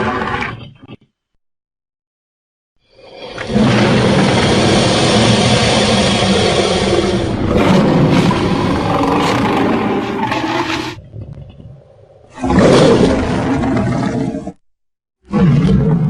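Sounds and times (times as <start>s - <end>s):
creature roars: 3.0s - 11.0s, 15.3s - 16.0s.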